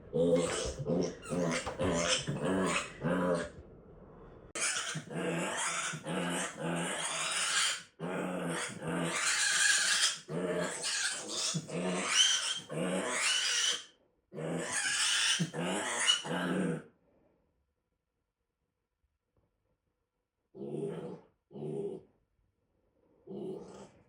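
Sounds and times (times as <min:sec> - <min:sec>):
pigs grunting and squealing: 0:00.0 - 0:03.6, 0:04.6 - 0:16.9, 0:20.6 - 0:22.0, 0:23.3 - 0:24.0.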